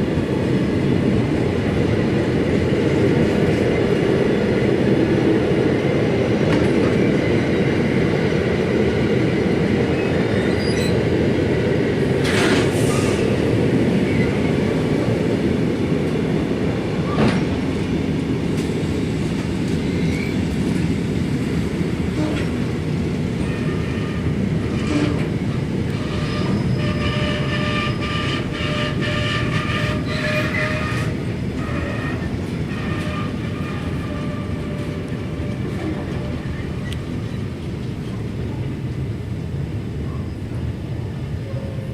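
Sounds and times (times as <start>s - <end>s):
freight train wagons rumbling: 0.0s - 41.9s.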